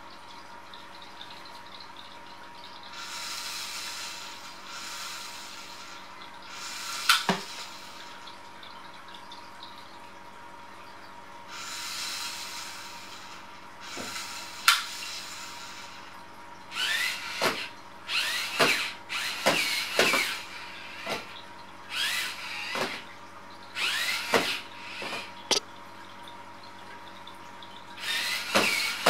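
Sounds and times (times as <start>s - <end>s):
small electric motors whirring: 16.7s - 23.0s, 23.8s - 25.3s, 28.0s - 29.0s.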